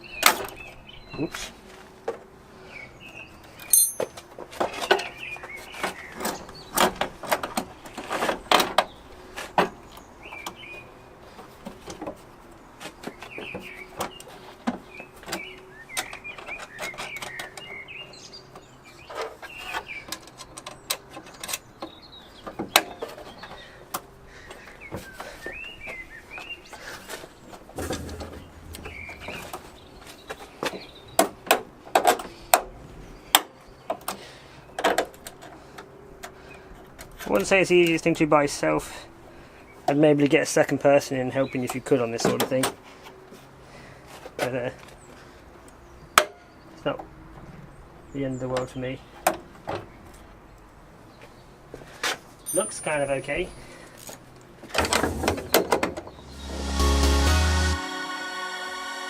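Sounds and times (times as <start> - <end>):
small birds chirping: 12.5 - 27.7, 28.3 - 31.4
metal knocks and clanks of car bonnet: 27.8 - 29.8.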